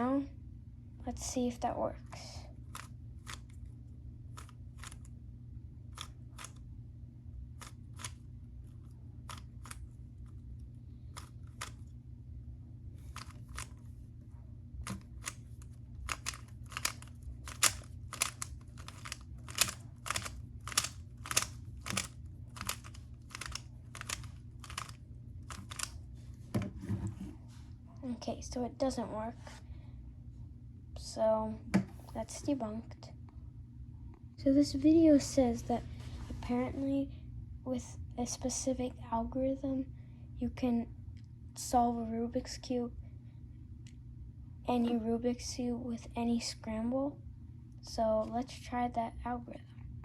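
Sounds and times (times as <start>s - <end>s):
puzzle cube layers clicking: 16.1s - 25.9s.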